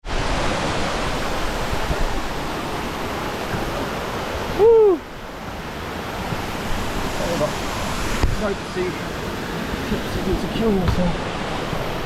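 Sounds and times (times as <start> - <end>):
waterfall rushing: 0.0 - 12.0.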